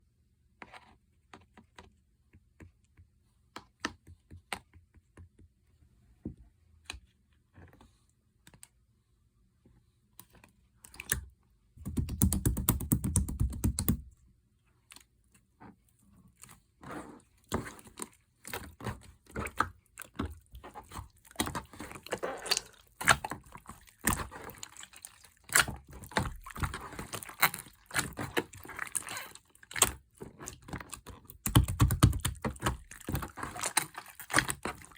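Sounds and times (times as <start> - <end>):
slime squishing with sticky pops: 17.4 - 34.9.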